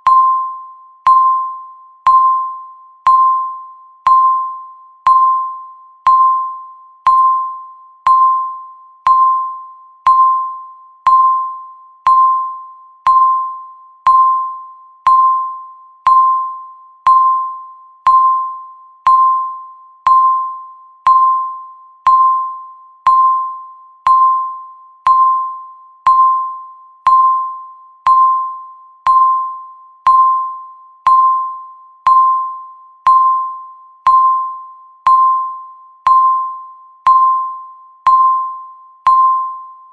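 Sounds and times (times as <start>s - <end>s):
bell-like timer ticks: 0.0s - 39.9s.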